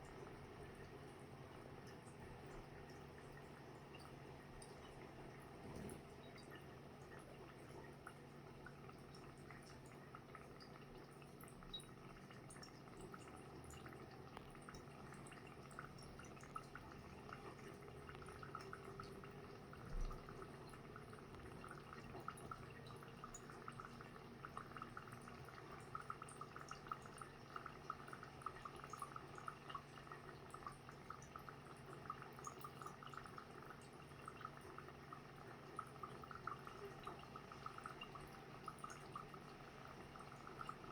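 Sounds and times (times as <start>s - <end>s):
dry ice bubbling in water: 0.0s - 40.9s.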